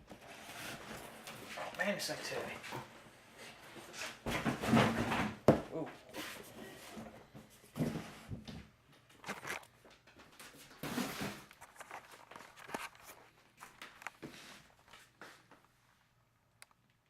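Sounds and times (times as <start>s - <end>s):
cardboard box rustling and scraping: 10.8s - 13.4s.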